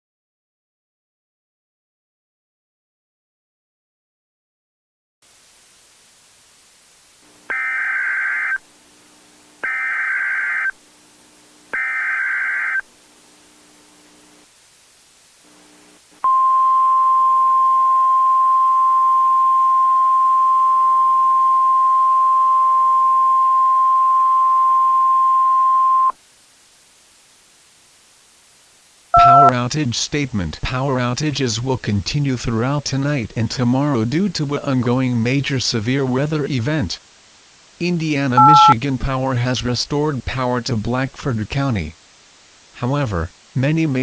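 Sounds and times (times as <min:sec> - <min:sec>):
single-pitch alert tone: 0:29.2 - 0:29.5, 0:38.4 - 0:38.8
warbling digital data tones: 0:29.2 - 0:29.5, 0:38.4 - 0:38.8.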